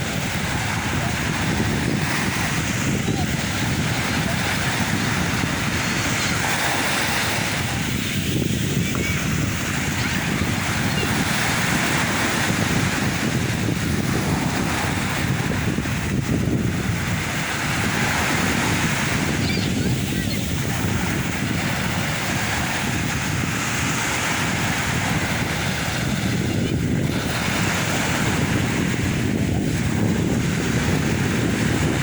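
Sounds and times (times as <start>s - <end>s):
sea waves breaking on shore: 0.0s - 32.0s
wind rumbling on microphone: 0.0s - 32.0s.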